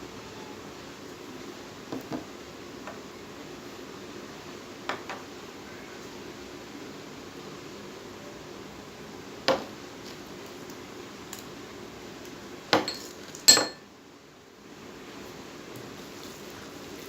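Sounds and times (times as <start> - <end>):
spoon knocking against bowl: 12.8 - 13.8.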